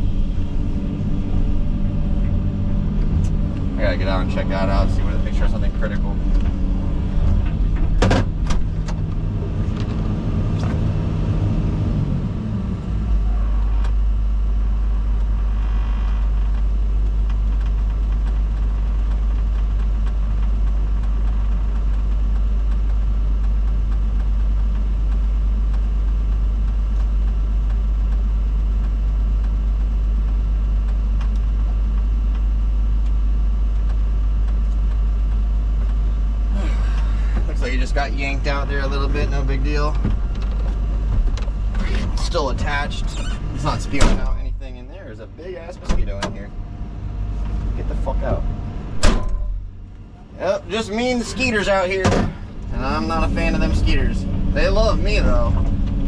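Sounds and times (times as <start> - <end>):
excavator diesel engine idling: 13.0 - 56.0.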